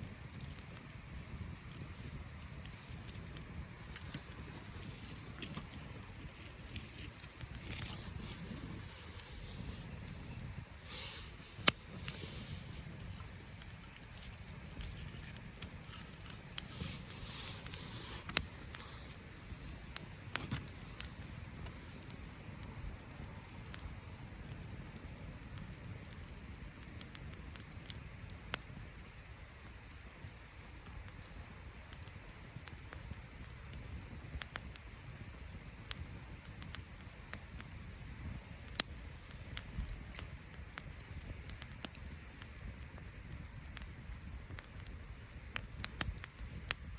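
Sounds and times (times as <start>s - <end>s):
campfire crackling and popping: 0.0s - 46.9s.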